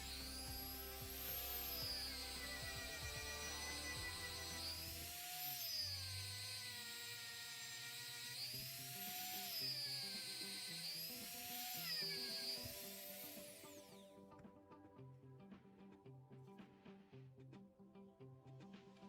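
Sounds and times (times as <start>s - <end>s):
background music with sweeping tone: 0.0s - 5.1s.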